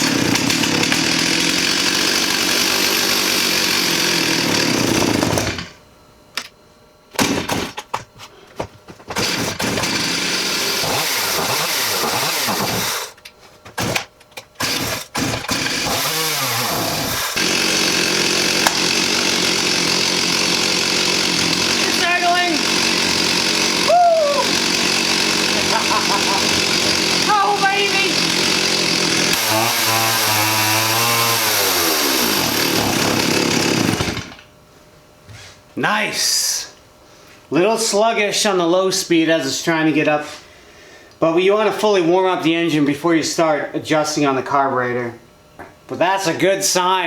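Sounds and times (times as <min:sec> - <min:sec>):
chainsaw engine revving: 0:00.0 - 0:05.8, 0:09.2 - 0:13.2, 0:14.6 - 0:34.4
chainsaw engine running: 0:00.0 - 0:05.8, 0:09.2 - 0:13.2, 0:14.6 - 0:34.4.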